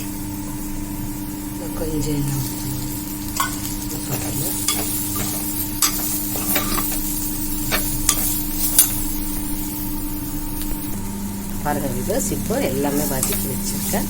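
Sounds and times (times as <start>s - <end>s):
food sizzling in oil: 0.0s - 14.0s
steady hum: 0.0s - 14.0s
spatula scraping a pan: 3.4s - 9.0s.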